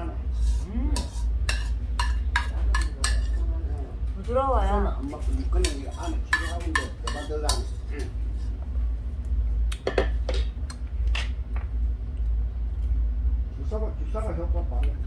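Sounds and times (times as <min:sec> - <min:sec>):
steady low hum: 0:00.0 - 0:15.0
utensils clinking on a dish: 0:00.5 - 0:03.5, 0:05.0 - 0:08.2.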